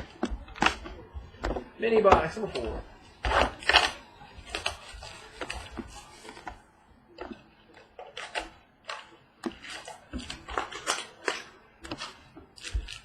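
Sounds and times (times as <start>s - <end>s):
cards clicking and rustling: 0.0s - 6.6s, 7.2s - 13.0s.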